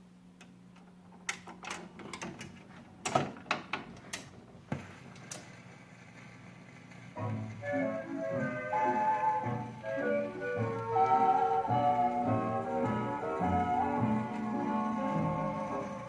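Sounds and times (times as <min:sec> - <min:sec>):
record playing music: 0:06.6 - 0:16.0.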